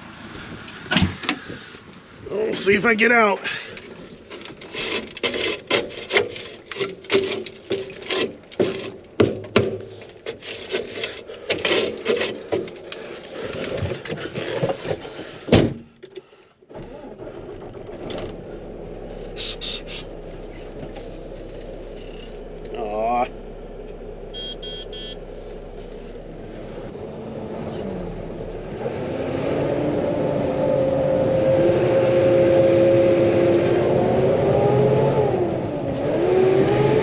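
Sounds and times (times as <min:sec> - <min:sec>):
diesel truck engine under load: 0:03.4 - 0:37.0
knocks and rattles: 0:04.2 - 0:16.3
steady quieter hum: 0:18.4 - 0:27.1.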